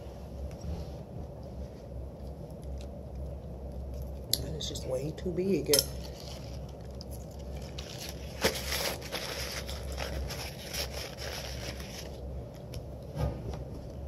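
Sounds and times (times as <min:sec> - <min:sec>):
chewing food: 0:02.0 - 0:04.4.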